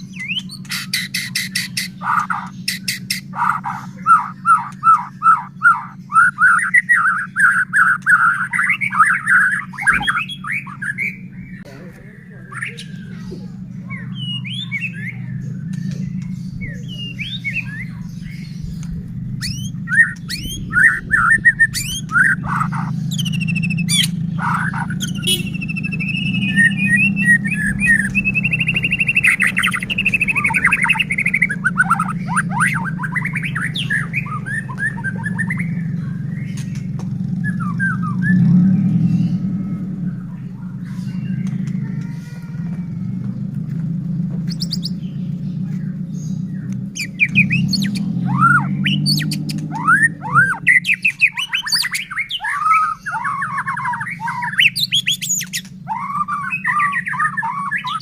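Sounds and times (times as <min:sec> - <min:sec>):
bird singing whistled phrases: 0:00.0 - 0:11.2, 0:13.8 - 0:18.0, 0:19.4 - 0:36.6, 0:37.4 - 0:39.4, 0:46.6 - 0:58.0
low hum: 0:00.0 - 0:58.0.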